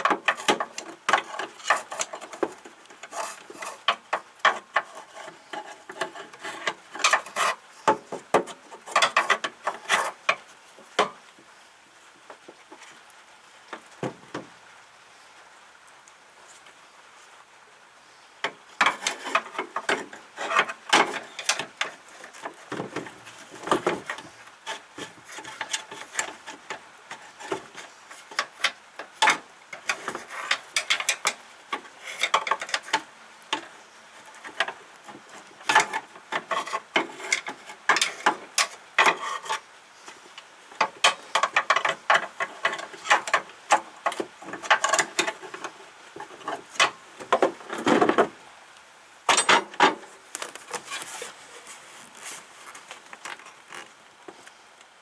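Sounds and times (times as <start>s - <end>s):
hand tool scraping and clicking: 0.0s - 10.4s, 18.8s - 48.0s, 49.3s - 51.4s.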